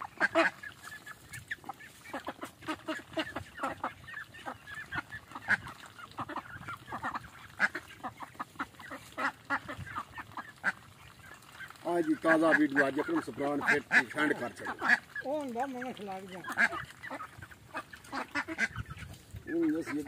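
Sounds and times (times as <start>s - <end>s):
ducks quacking: 0.0s - 20.0s.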